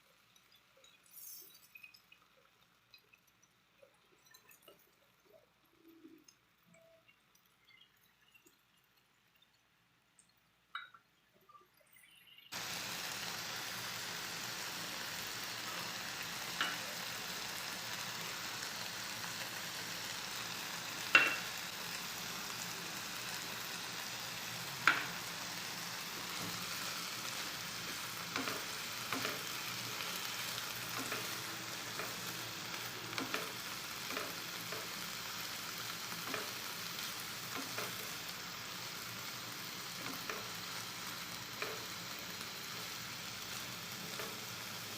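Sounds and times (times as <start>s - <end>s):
food sizzling in frying pan: 12.5s - 44.9s.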